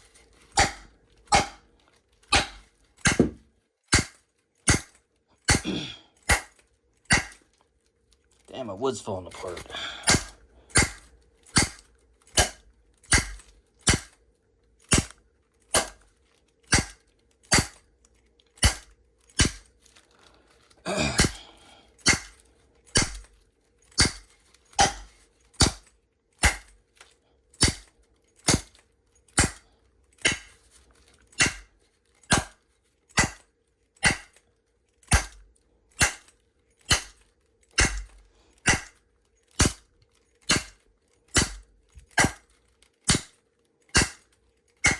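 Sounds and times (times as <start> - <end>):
wood block knocking on padlock: 3.1 - 3.4
person coughing: 5.6 - 6.1, 20.8 - 21.5.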